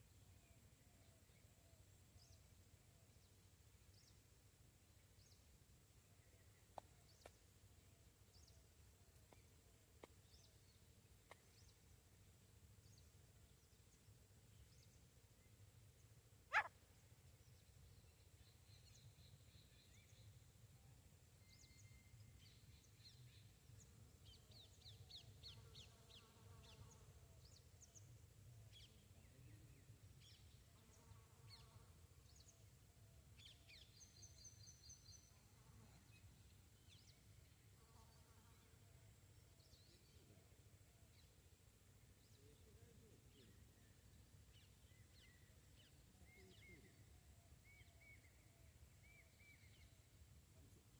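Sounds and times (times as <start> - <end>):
small birds chirping: 12.8 - 20.6, 42.0 - 50.1.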